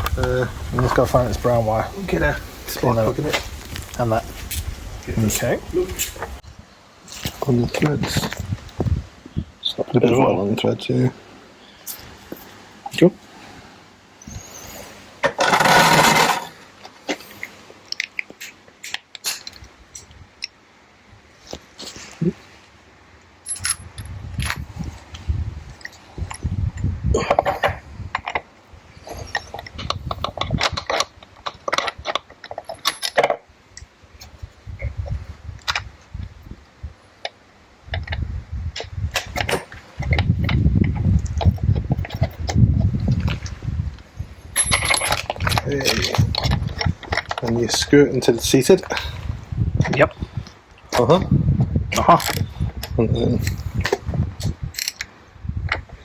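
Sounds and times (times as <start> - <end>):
low knocking and rubbing: 15.3 - 16.6
metallic clicks and clinks of tools: 23.4 - 24.6, 29.1 - 33.4, 44.6 - 47.5, 52.0 - 52.5, 54.7 - 55.1.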